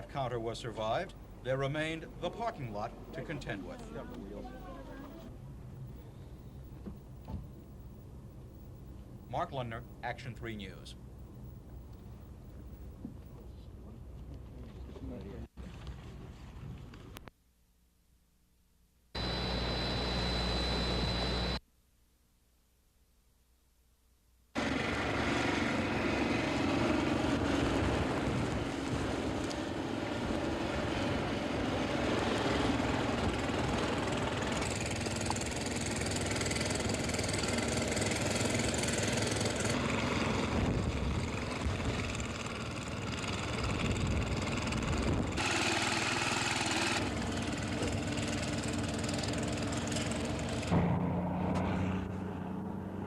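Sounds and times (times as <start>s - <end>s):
motor engine running: 19.2s - 21.6s, 24.6s - 51.0s.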